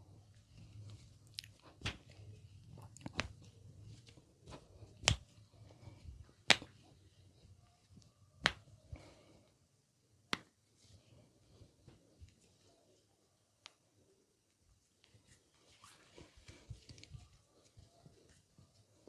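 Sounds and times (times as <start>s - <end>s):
hand snaps: 5.0s - 5.2s, 6.5s - 6.8s, 8.4s - 8.7s, 10.3s - 10.6s.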